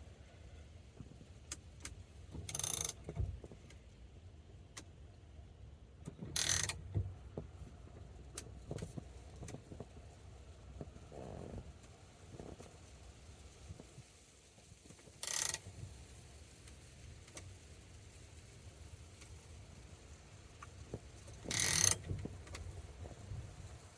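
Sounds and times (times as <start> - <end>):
ratchet wrench ratcheting: 2.5 - 3.1, 6.3 - 6.8, 15.2 - 15.7, 21.4 - 22.1.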